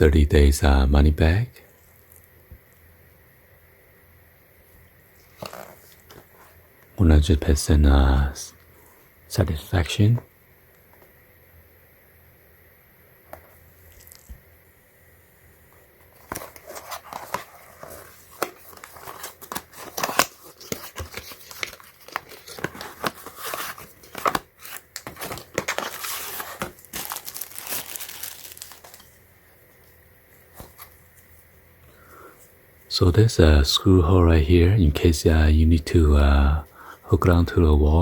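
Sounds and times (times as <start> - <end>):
packaging crinkling and tearing: 16.1 - 29.2.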